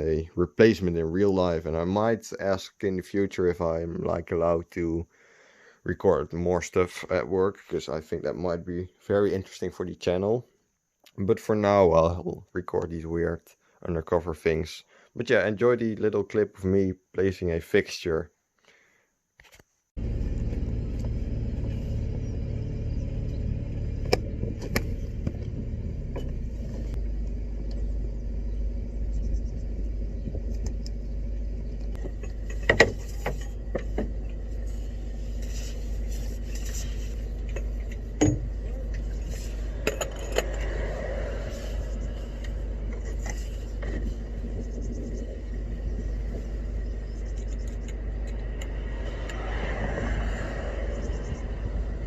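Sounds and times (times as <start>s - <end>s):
vehicle engine rumbling: 20.0s - 52.0s
metallic clinks and knocks: 37.4s - 41.0s.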